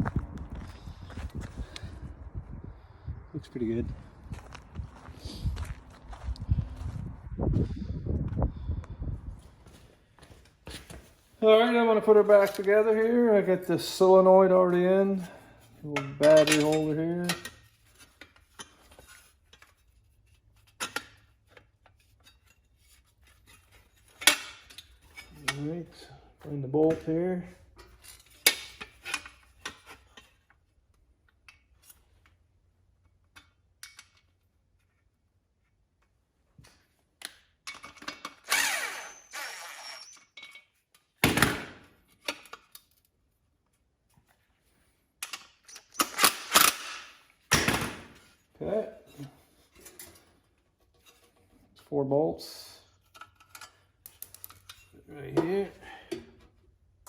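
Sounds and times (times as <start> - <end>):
hand tools and metal parts clanking: 9.6 - 35.0, 36.0 - 43.2, 44.1 - 57.0.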